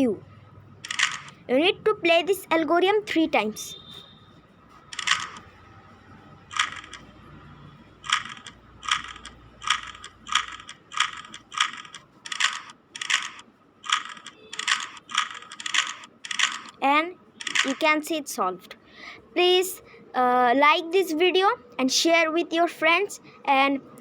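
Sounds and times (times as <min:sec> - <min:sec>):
plastic puzzle cube clacks: 0:06.5 - 0:07.0.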